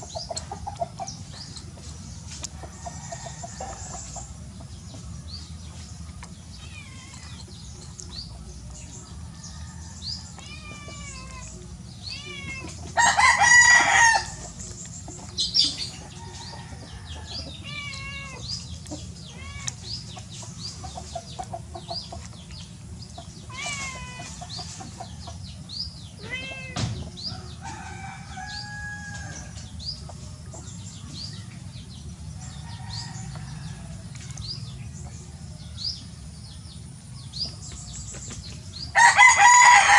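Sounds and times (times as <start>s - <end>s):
chickens clucking: 0.0s - 39.9s
small birds chirping: 0.0s - 39.9s
rooster crowing: 12.3s - 14.4s, 27.3s - 29.6s, 39.0s - 39.9s.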